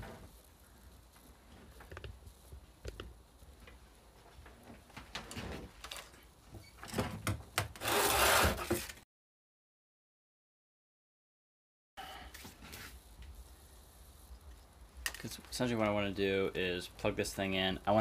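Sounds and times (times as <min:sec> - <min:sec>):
rustling scrape: 0:12.3 - 0:13.0
clicks handling small parts: 0:15.0 - 0:15.3.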